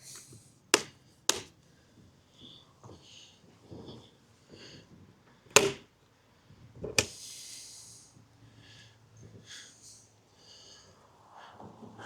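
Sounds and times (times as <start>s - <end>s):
lid catch clacks: 0.8s - 1.5s, 5.5s - 5.8s.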